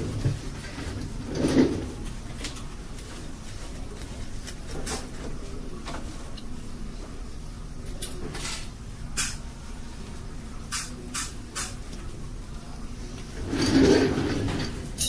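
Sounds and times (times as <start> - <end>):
rustling sound: 0.0 - 6.3.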